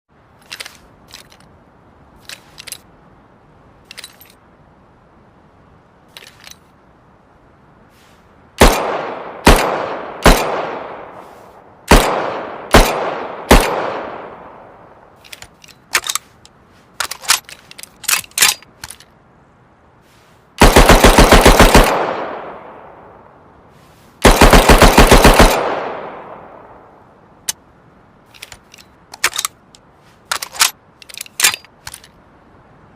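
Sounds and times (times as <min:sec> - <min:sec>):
loud gunshots with echo: 0:08.6 - 0:11.2, 0:11.9 - 0:14.6, 0:24.2 - 0:26.6
rapid-fire gun bursts: 0:20.6 - 0:22.2, 0:24.2 - 0:25.8.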